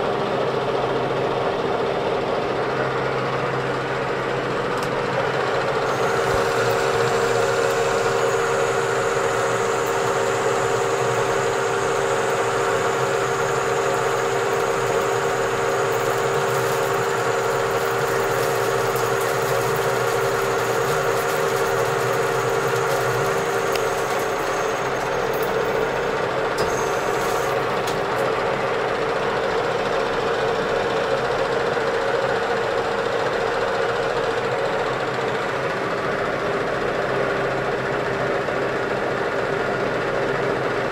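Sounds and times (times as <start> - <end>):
metal lathe whining: 2.8 - 30.9.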